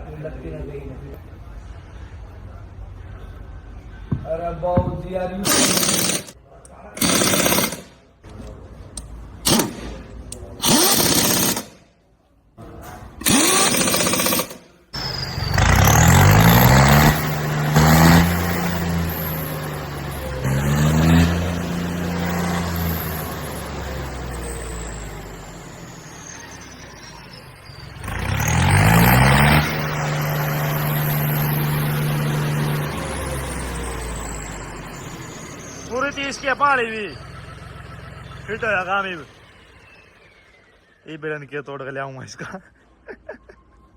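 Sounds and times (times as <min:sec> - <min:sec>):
tractor diesel engine revving: 0:05.4 - 0:11.9, 0:12.8 - 0:41.3.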